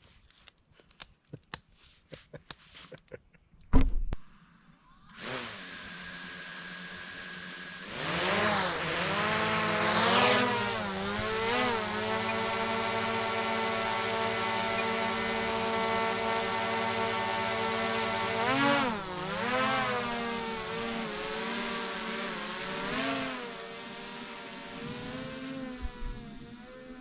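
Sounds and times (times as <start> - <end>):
engine running: 5.1 - 27.0.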